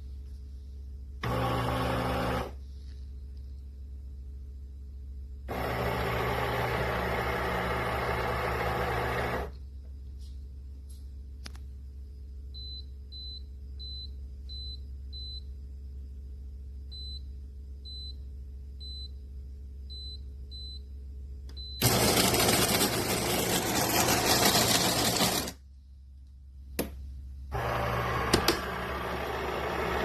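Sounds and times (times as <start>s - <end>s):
steady low hum: 0.0s - 6.2s, 9.5s - 21.8s, 25.2s - 27.7s
loud noisy coffee maker run: 1.2s - 2.6s, 5.5s - 9.6s, 21.8s - 25.6s, 27.5s - 30.0s.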